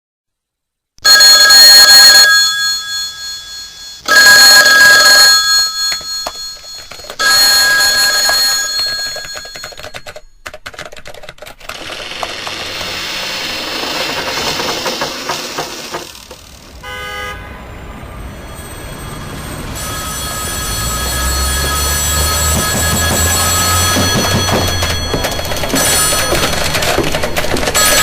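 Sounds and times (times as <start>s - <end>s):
telephone ringing: 1.0s - 10.7s, 18.5s - 28.0s.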